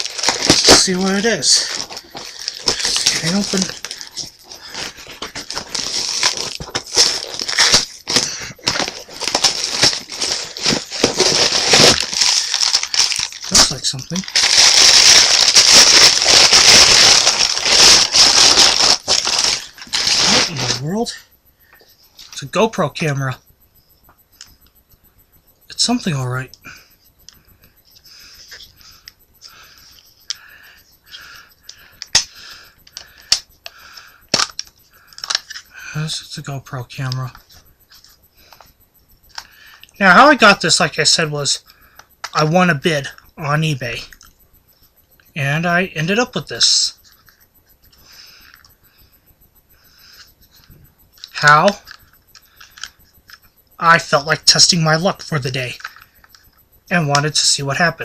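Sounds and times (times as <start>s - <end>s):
packaging crinkling and tearing: 0.0s - 20.7s.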